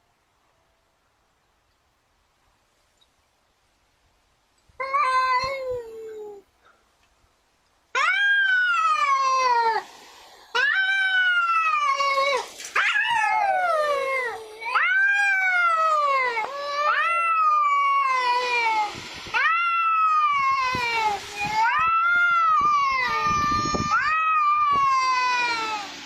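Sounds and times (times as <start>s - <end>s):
cat meowing: 4.8s - 6.4s, 10.6s - 25.9s.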